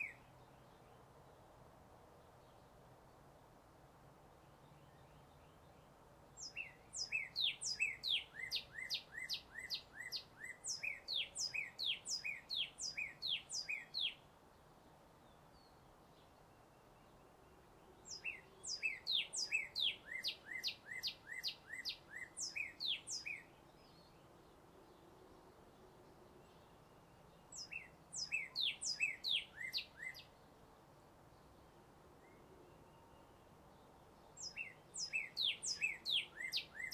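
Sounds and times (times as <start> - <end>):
songbird whistling down-slurred notes: 6.4 - 14.2, 18.1 - 23.5, 27.5 - 30.3, 34.4 - 36.9.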